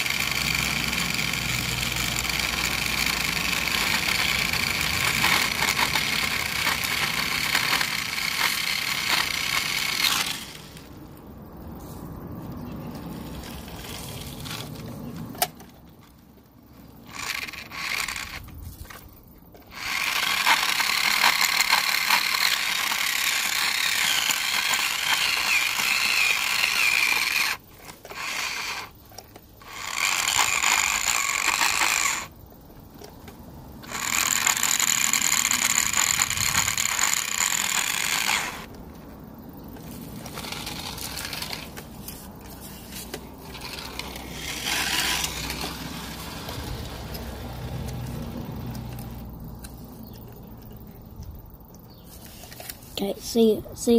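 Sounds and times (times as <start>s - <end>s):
rc car motor whining: 0.0s - 10.9s, 17.0s - 18.9s, 19.6s - 29.0s, 29.6s - 32.4s, 33.8s - 38.7s, 40.2s - 47.2s.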